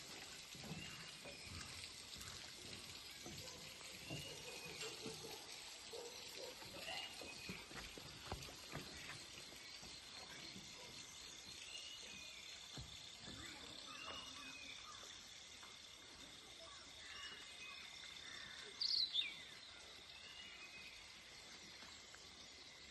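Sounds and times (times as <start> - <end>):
high insect drone: 8.2 - 18.6.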